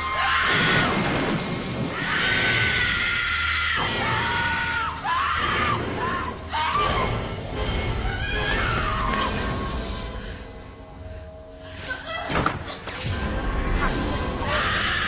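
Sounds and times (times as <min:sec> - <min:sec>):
music: 0:00.0 - 0:15.0.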